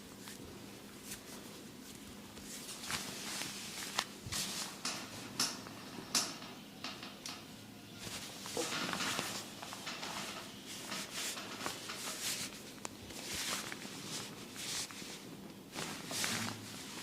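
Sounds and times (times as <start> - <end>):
hands rubbing skin and hair: 1.0 - 4.8, 8.0 - 17.0.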